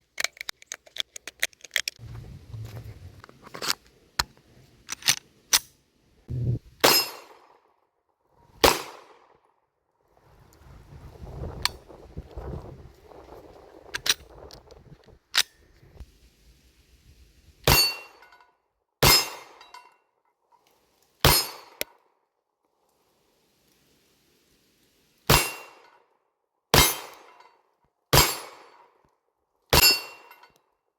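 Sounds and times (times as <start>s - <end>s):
pistol shots with ringing tail: 6.8s - 7.5s, 8.6s - 9.2s, 19.0s - 19.6s, 21.3s - 21.8s, 25.3s - 25.8s, 26.8s - 27.3s, 28.2s - 28.7s, 29.8s - 30.3s
pistol shots with echo: 8.6s - 9.2s.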